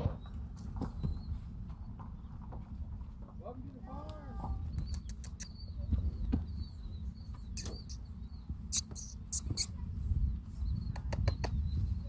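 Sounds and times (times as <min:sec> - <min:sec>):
wind buffeting microphone: 0:03.9 - 0:12.0
faint bird chirps: 0:04.6 - 0:12.0.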